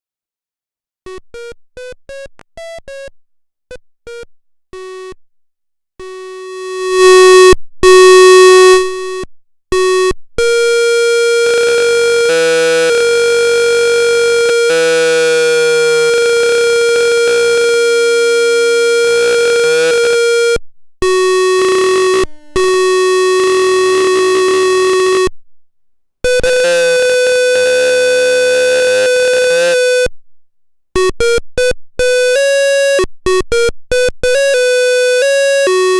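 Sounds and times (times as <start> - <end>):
lower electronic tones: 6.0 - 20.5, 26.3 - 30.1
long steady electronic tones: 9.8 - 25.3, 26.3 - 30.1.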